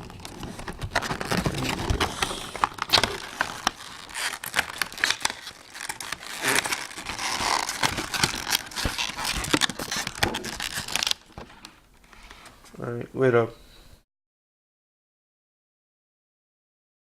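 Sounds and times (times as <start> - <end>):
packaging crinkling and snapping: 0.0 - 11.8.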